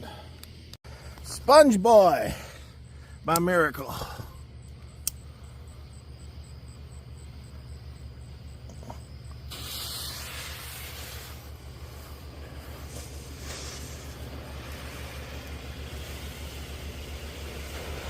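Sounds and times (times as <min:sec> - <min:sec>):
sharp click: 0:05.0 - 0:05.2
firework fountain hissing: 0:09.4 - 0:18.0.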